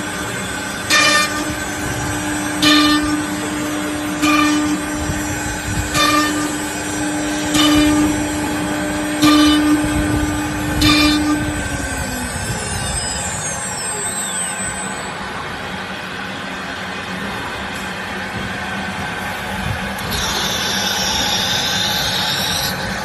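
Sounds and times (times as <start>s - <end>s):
router bit cutting wood: 0.0s - 15.2s, 20.0s - 23.0s
router spindle whining: 0.0s - 17.9s, 19.1s - 23.0s.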